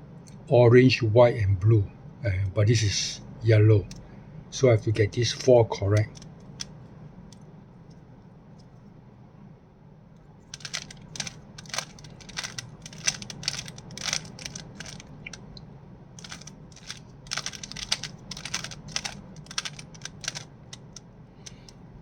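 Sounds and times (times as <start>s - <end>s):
steady low hum: 0.0s - 22.0s
puzzle cube plastic clicking: 5.3s - 7.4s, 10.5s - 15.6s, 16.2s - 21.9s.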